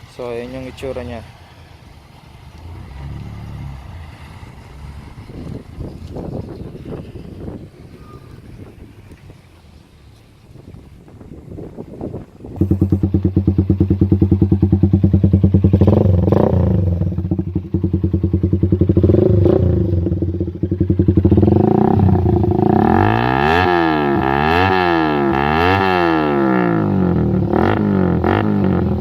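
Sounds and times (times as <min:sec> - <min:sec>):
motorcycle engine revving: 0:02.5 - 0:08.7, 0:12.5 - 0:29.0
motorcycle engine idling: 0:12.5 - 0:25.5.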